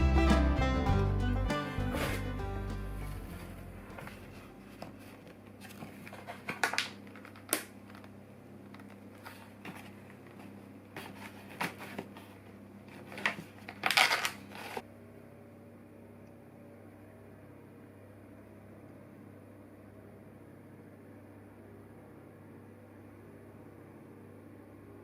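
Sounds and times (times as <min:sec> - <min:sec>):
rustling handling noises: 0:02.9 - 0:14.8.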